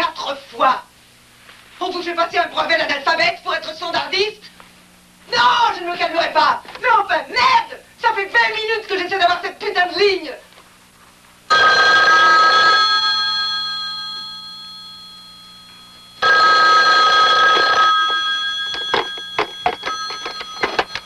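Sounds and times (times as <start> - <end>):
telephone bell ringing: 11.5 - 21.0.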